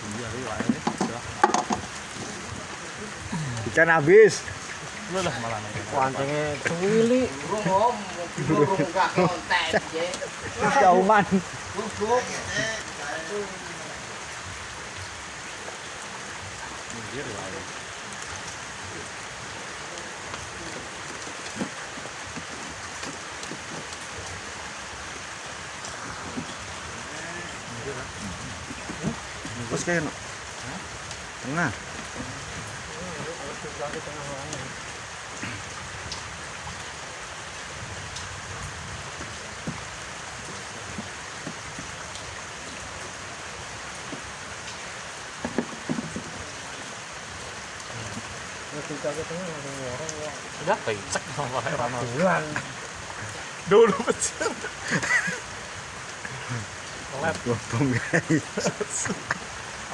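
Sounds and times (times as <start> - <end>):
water hissing: 0.0 - 59.9
loud knocks: 0.6 - 1.9.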